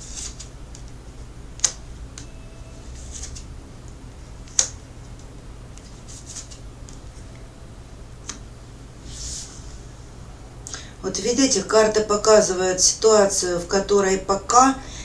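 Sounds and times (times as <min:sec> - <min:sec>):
cards rustling: 0:00.0 - 0:01.0, 0:02.9 - 0:03.5, 0:04.4 - 0:07.4
cards snapping: 0:01.6 - 0:02.2, 0:03.0 - 0:03.5, 0:04.4 - 0:07.0.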